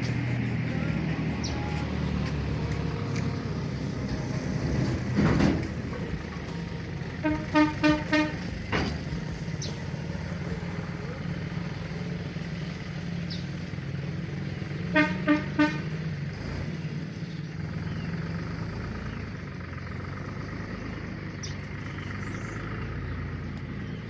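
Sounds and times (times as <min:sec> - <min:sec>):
tractor engine running: 0:00.0 - 0:24.0
horn toots: 0:03.8 - 0:11.6, 0:14.8 - 0:16.2.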